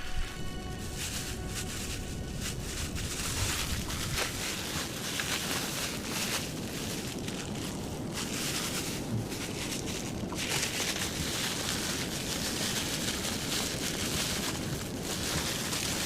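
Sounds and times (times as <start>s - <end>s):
low rumbling: 0.0s - 11.8s
faint rustles: 0.0s - 16.0s
wind on microphone: 0.0s - 16.0s.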